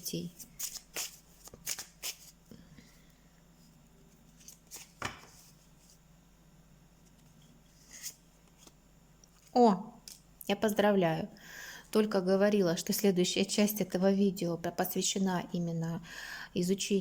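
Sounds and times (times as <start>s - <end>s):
cards clicking and slapping: 0.6s - 2.3s
card slapping on table: 4.8s - 5.4s.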